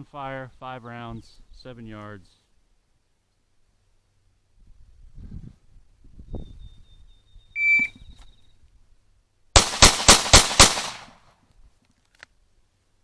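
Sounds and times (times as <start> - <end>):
pistol shots: 9.6 - 11.2.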